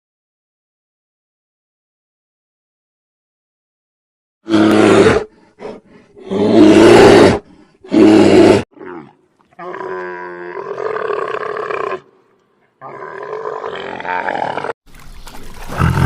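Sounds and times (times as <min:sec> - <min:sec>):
big cat roaring: 0:04.4 - 0:12.1, 0:12.8 - 0:14.8.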